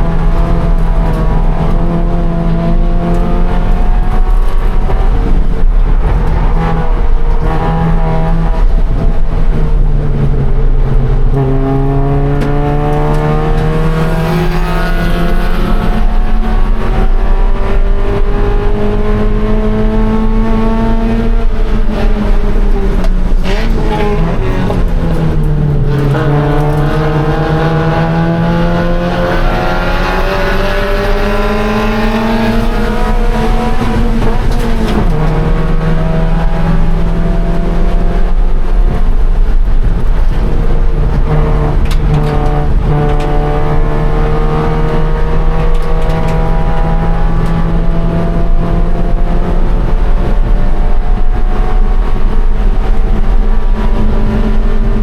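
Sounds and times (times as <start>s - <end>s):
car engine revving: 0.0s - 55.0s.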